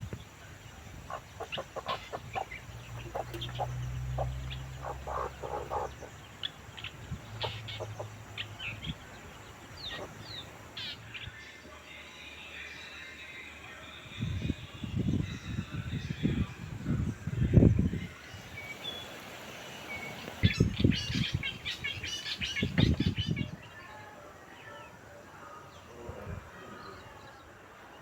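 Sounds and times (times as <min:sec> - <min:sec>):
chickens clucking: 0:00.0 - 0:11.0
birds calling: 0:00.0 - 0:12.0, 0:17.6 - 0:28.0.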